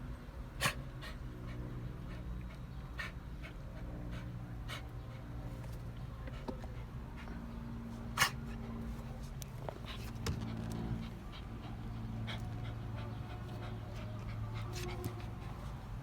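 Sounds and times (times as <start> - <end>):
steady low hum: 0.0 - 16.0
dog panting excitedly: 0.6 - 16.0.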